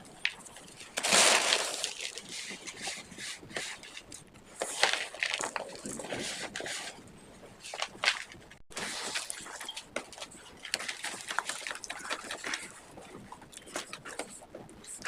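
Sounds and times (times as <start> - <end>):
cornstarch squeaky crunching: 0.4 - 2.8.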